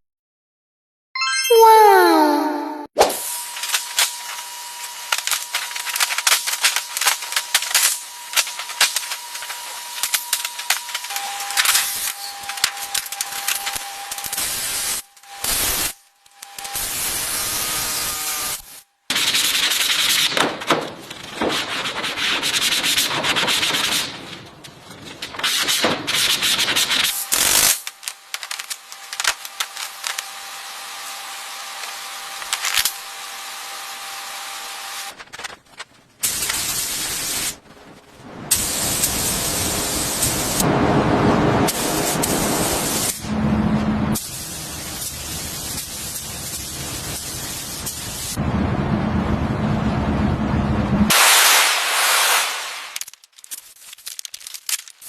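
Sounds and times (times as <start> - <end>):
sanding car body panels: 19.1 - 24.3, 25.4 - 27.2.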